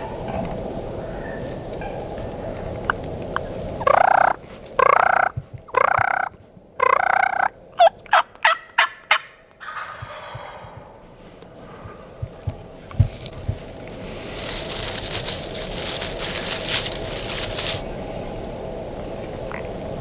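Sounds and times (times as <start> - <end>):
turkeys gobbling: 0.0 - 17.9.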